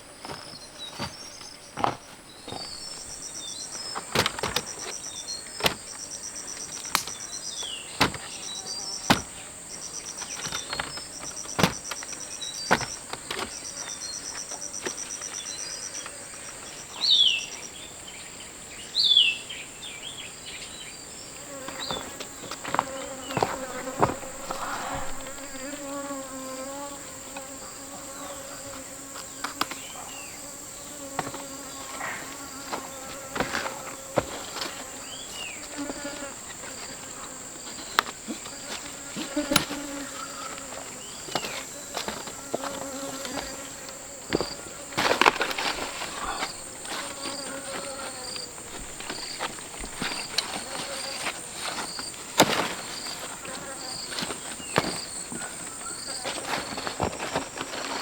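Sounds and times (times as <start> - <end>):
pulsed insect trills: 0.0 - 17.8, 21.3 - 58.0
falling bird calls: 0.0 - 58.0.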